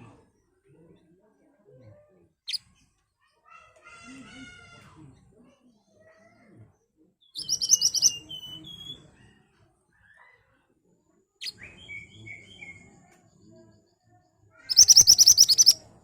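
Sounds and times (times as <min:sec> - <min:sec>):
bird singing in sharp bursts: 0:07.4 - 0:08.9, 0:14.7 - 0:15.8.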